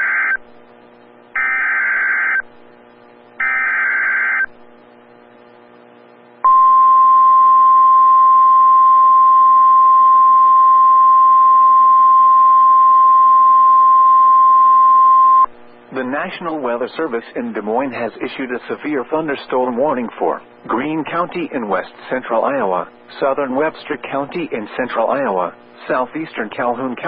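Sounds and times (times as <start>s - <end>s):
steady warning alarm tone: 1.4s - 2.4s, 3.4s - 4.5s.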